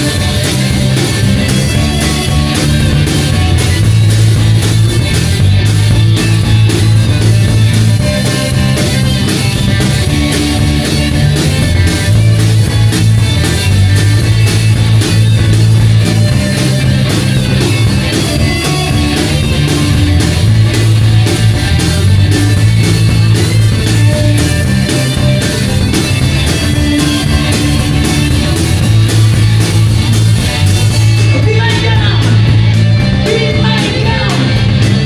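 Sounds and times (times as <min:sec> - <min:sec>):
rock band playing: 0:00.0 - 0:35.0.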